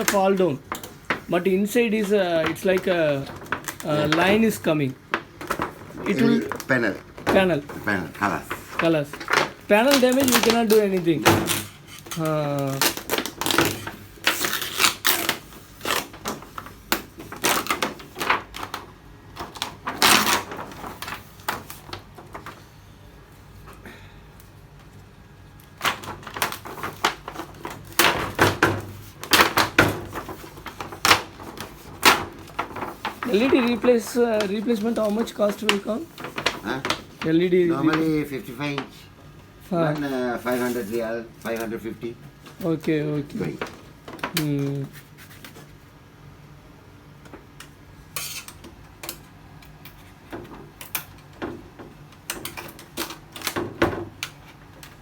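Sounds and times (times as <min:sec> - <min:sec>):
hard objects knocking and clattering: 0:02.0 - 0:12.2.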